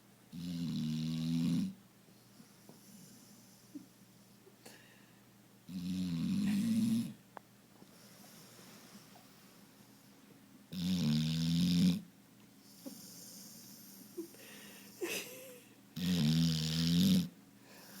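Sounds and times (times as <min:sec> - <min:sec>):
dog snoring: 0:00.3 - 0:01.8, 0:05.7 - 0:07.2, 0:10.7 - 0:12.1, 0:16.0 - 0:17.4
soft breath: 0:02.1 - 0:05.3, 0:07.8 - 0:10.3, 0:12.6 - 0:15.1, 0:17.6 - 0:18.0.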